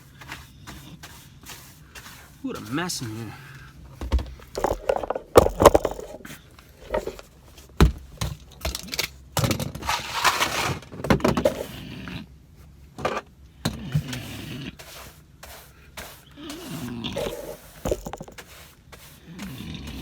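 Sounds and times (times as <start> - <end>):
broom sweeping floor: 0.0 - 7.8, 9.8 - 10.9, 14.0 - 20.0
knocks and thuds of objects moved: 3.8 - 11.6, 17.2 - 18.6.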